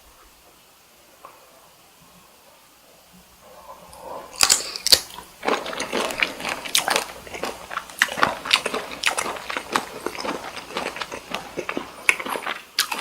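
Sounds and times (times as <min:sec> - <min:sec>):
chewing with crackles: 0:03.4 - 0:13.0
shrimp bites: 0:04.4 - 0:13.0.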